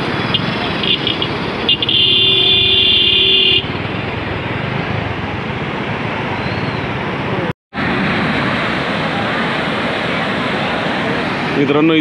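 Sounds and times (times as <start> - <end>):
passing traffic: 0.0 - 12.0
vehicle horn: 0.3 - 3.7
rushing water: 3.6 - 12.0.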